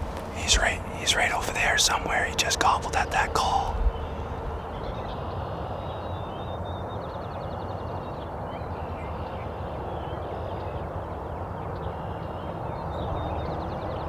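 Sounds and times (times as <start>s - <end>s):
small birds chirping: 0.0s - 4.3s
low outdoor background rumble: 0.0s - 6.0s.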